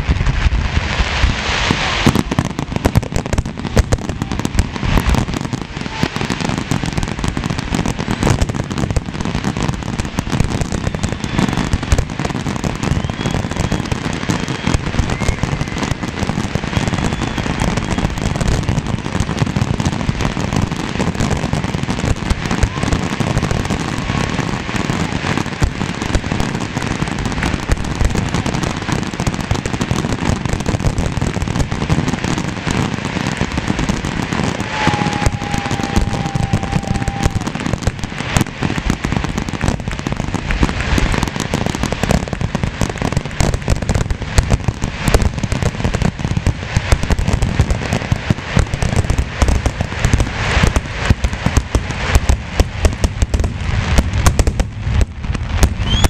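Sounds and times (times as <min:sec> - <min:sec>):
firework whistle: 0:00.0 - 0:42.4, 0:53.6 - 0:56.0
fireworks bangs and crackling: 0:00.0 - 0:56.0.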